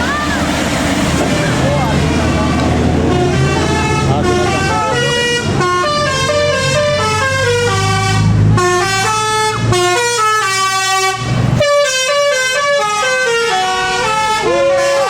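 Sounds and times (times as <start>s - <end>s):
bus engine rumble: 0.0s - 15.0s
musical air horn melody: 3.0s - 15.0s.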